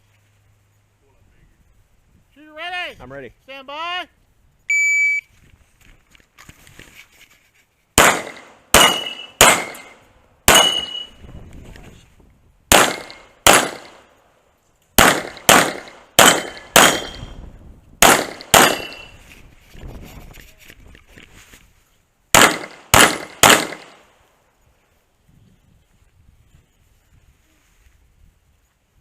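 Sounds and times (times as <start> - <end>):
pistol shots: 8.0 - 11.1, 12.7 - 14.1, 15.0 - 17.4, 18.0 - 19.1, 22.3 - 24.1.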